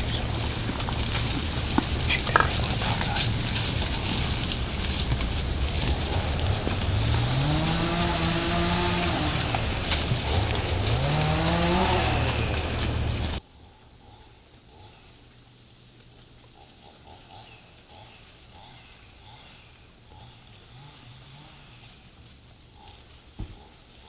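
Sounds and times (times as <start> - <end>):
vehicle engine revving: 0.0 - 13.4.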